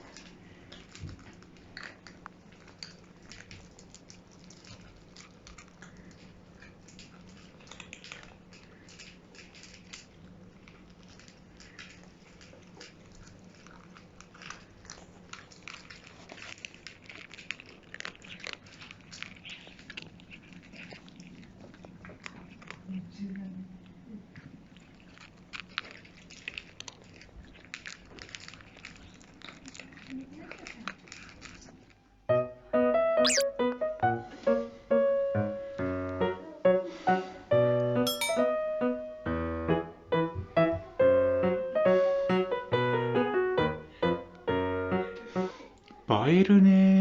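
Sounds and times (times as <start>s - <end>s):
cats crunching dry food: 0.0s - 32.0s.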